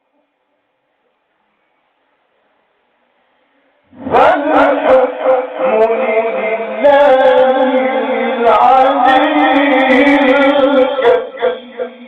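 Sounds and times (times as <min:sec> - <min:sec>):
man chanting melodically: 0:03.9 - 0:12.0.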